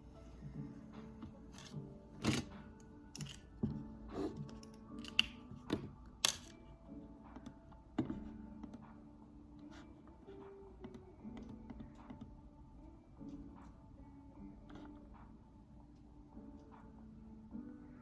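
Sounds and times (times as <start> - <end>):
soft background music: 0.0 - 18.0
keyboard and mouse clicks: 4.3 - 6.6.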